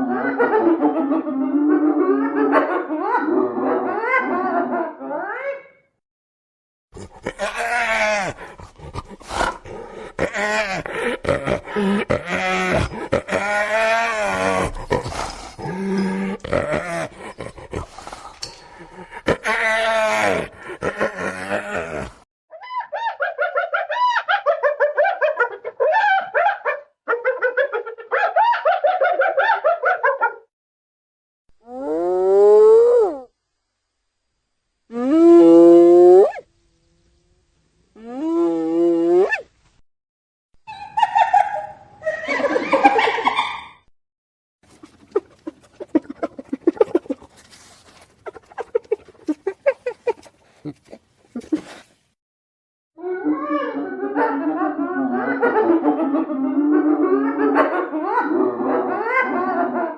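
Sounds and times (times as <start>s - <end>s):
hyena giggling: 7.0s - 22.2s, 44.7s - 51.9s, 53.4s - 59.9s.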